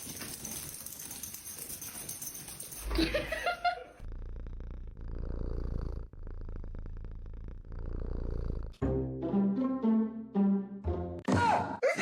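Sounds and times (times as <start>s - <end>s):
cat purring: 4.0s - 8.8s.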